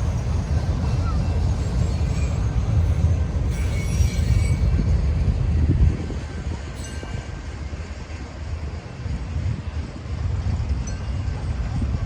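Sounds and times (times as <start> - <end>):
train rumbling past: 0.0 - 12.0
high wheel squeal: 0.8 - 5.1.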